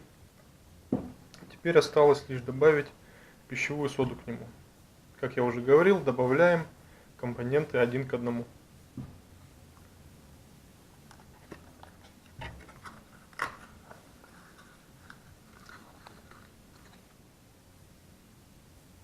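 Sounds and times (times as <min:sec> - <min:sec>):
soft rustling: 0:10.9 - 0:17.2.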